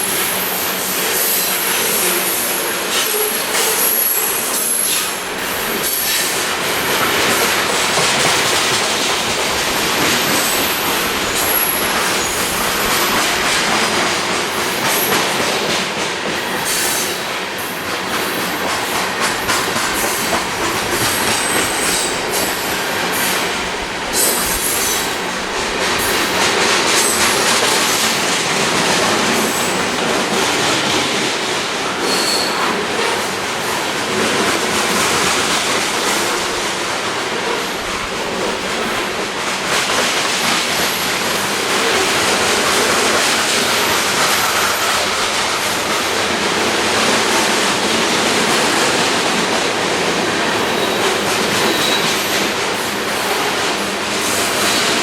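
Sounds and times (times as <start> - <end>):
train wheels squealing: 0.0 - 6.4, 9.8 - 13.4, 16.3 - 17.7, 32.0 - 33.3, 50.4 - 52.5
freight train cars rolling: 0.0 - 55.0
wheels clacking over rail joints: 17.8 - 55.0.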